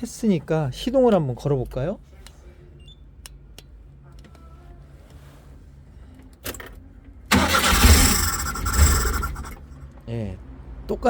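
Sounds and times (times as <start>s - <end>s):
engine cranking: 7.3s - 10.0s.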